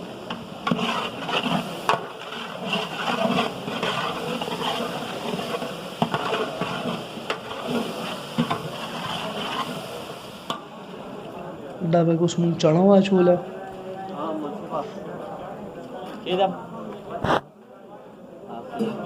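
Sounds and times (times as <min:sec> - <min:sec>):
ladle stirring in pot: 0:00.0 - 0:10.7.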